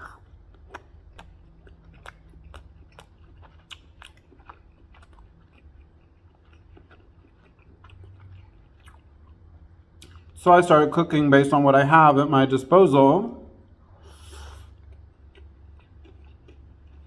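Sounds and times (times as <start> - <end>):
person chewing crunchy food: 0.0 - 10.4, 13.8 - 17.0
low steady hum: 0.0 - 17.0.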